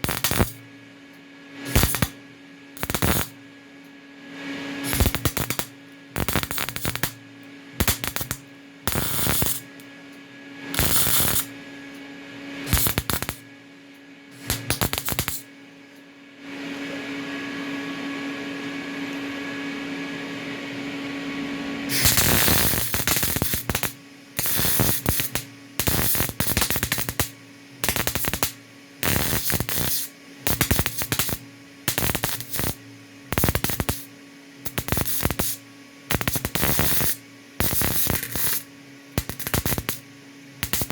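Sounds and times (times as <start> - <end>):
electric arc welding: 0.0 - 0.7, 1.6 - 2.2, 2.8 - 3.4, 4.8 - 7.2, 7.8 - 9.8, 10.7 - 11.6, 12.6 - 13.5, 14.4 - 15.5, 21.9 - 40.9
steady hum: 0.0 - 40.9.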